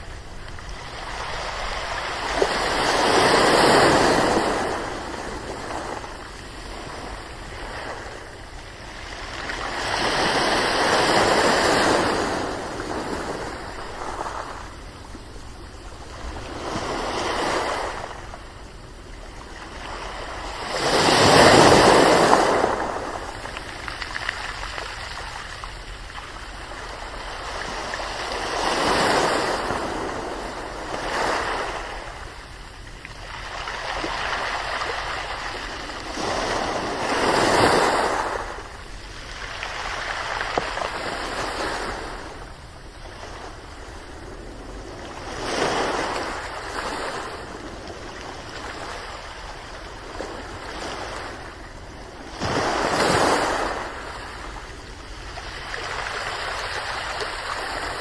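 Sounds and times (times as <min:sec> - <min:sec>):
ocean waves breaking: 0:00.0 - 0:58.0.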